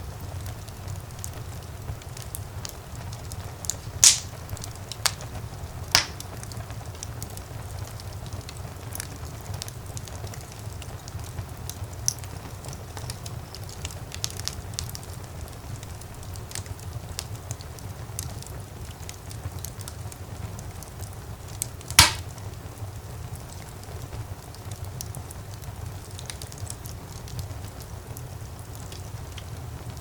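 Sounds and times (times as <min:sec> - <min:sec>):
low rumble of flames: 0:00.0 - 0:30.0
wood fire crackling: 0:00.0 - 0:30.0
loud sharp pop of fire: 0:03.7 - 0:05.3, 0:05.9 - 0:06.4, 0:21.9 - 0:22.5.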